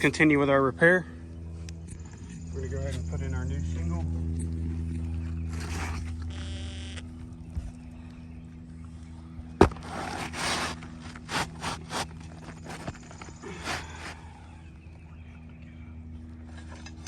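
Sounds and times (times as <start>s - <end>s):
steady low hum: 0.0s - 17.0s
shingle scraping against shingle: 9.6s - 14.3s.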